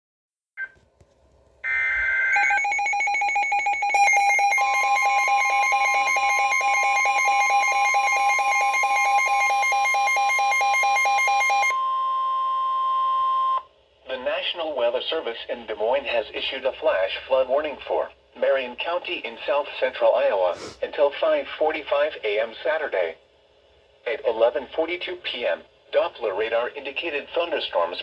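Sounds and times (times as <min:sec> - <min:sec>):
steady alarm tone: 0:01.6 - 0:12.2
pulsing electronic alarm beep: 0:01.7 - 0:13.6.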